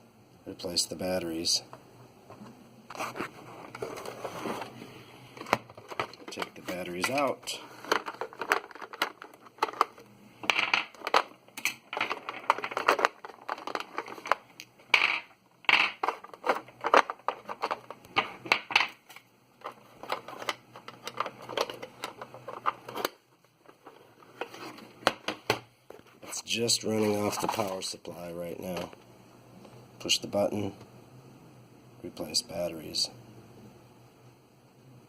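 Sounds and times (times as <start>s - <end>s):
batteries clacking and rattling: 5.4s - 25.3s.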